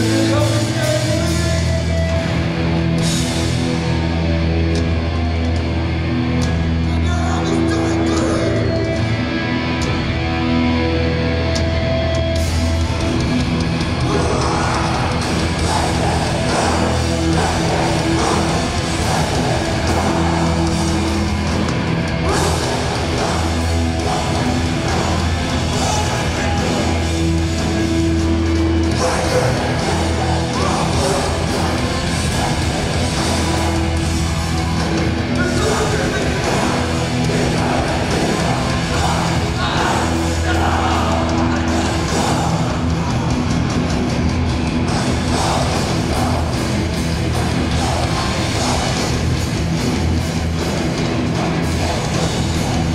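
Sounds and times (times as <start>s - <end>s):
punk band playing live: 0.0s - 52.9s
shouted vocals: 14.0s - 43.7s, 44.7s - 52.9s.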